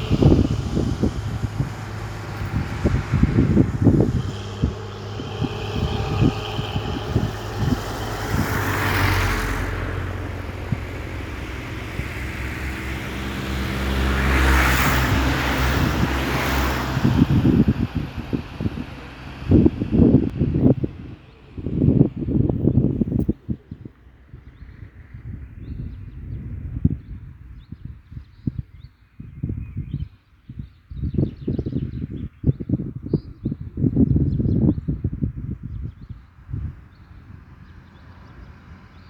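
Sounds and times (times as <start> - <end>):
vehicles passing: 0.0 - 26.9, 36.2 - 39.0
traffic engine hum: 0.0 - 27.2, 35.2 - 39.0
wind buffeting microphone: 0.0 - 39.0.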